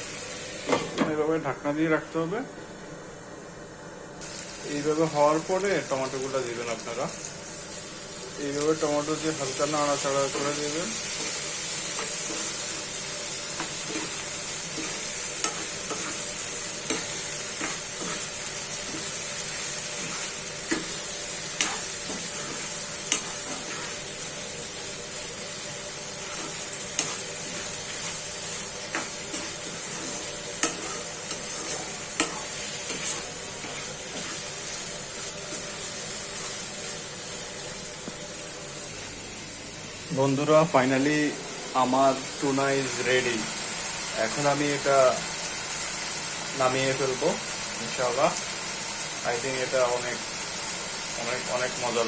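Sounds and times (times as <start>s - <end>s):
curry sizzling in a frying pan: 0.0s - 1.2s, 4.2s - 52.0s
utensil scraping a pan: 13.6s - 19.2s, 21.6s - 24.0s, 26.2s - 28.2s, 28.9s - 34.6s.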